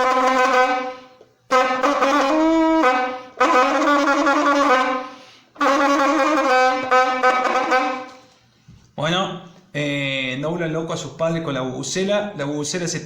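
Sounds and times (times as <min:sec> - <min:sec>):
homemade vuvuzela buzzing blasts: 0:00.0 - 0:08.3.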